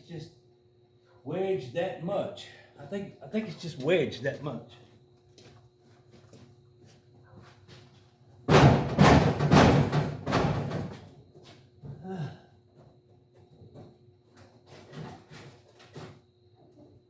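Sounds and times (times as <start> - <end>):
heavy thumps on sheet metal: 8.5 - 10.9.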